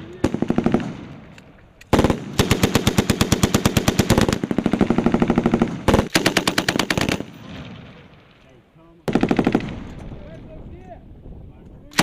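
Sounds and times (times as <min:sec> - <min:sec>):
machine gun firing bursts: 0:00.2 - 0:01.1, 0:01.9 - 0:07.4, 0:09.1 - 0:09.9.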